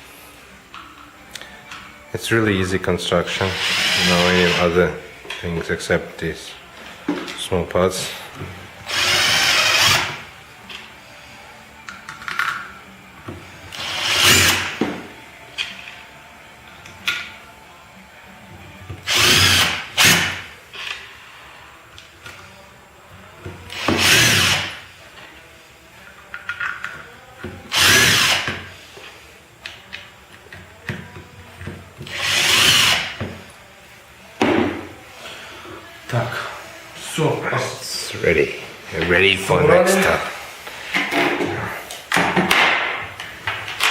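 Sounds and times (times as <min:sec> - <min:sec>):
power drill running: 0:03.4 - 0:04.8, 0:08.9 - 0:10.3, 0:13.7 - 0:14.8, 0:19.0 - 0:20.4, 0:23.7 - 0:24.8, 0:27.7 - 0:28.6, 0:32.1 - 0:33.2.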